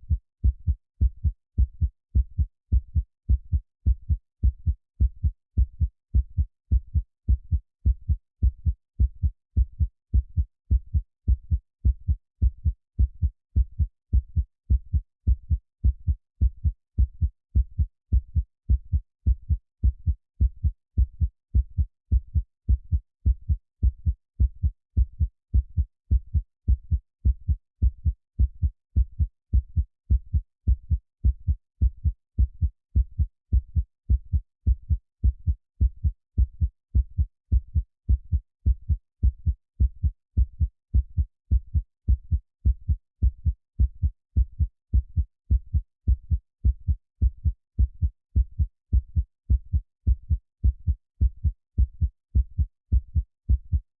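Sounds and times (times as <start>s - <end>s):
heartbeat thumps: 0.0s - 53.8s.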